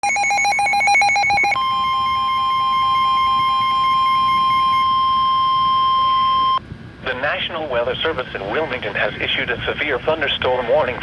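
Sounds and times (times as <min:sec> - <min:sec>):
rapid two-pitch beeping: 0:00.0 - 0:06.6
steady warning alarm tone: 0:00.0 - 0:06.6.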